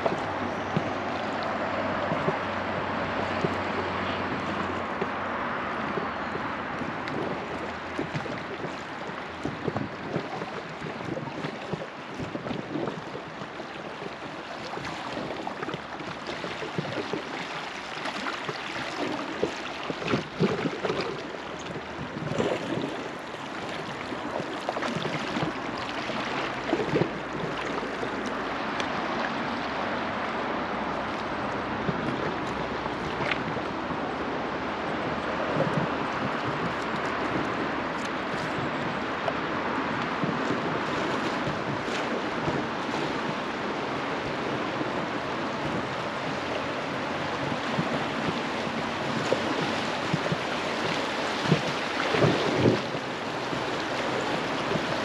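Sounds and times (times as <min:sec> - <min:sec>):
river water running: 0:00.0 - 0:55.0
water slapping against boat: 0:00.0 - 0:55.0.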